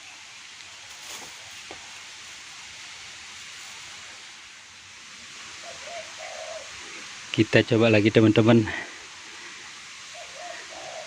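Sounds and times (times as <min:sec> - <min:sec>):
steady outdoor hiss: 0:00.0 - 0:11.0
bird low call: 0:05.6 - 0:07.1, 0:10.0 - 0:11.0.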